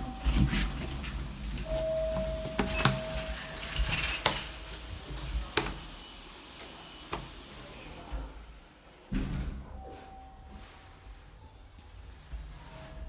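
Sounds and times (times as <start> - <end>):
heavy elevator thud: 0.0 - 6.0
low elevator rumble: 0.0 - 13.0
elevator clicks and knocks: 1.2 - 4.7.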